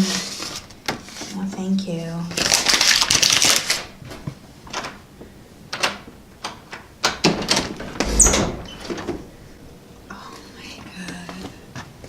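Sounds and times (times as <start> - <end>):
heavy thud: 7.8 - 9.3
short scrapes and knocks: 7.8 - 9.3
brief squeak: 8.0 - 9.0.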